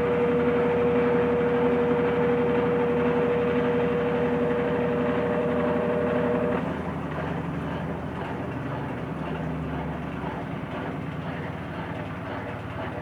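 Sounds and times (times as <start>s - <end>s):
washing machine drum rushing hum: 0.0s - 13.0s
washing machine whine: 0.0s - 13.0s.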